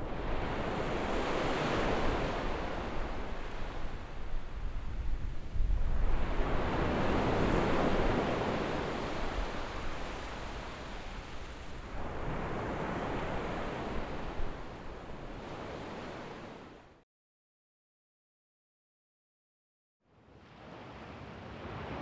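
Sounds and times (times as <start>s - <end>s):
waves washing on beach: 0.0s - 16.6s.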